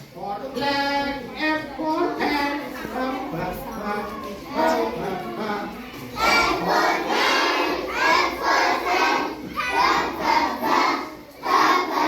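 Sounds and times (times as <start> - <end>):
children chanting in unison: 1.4 - 12.0.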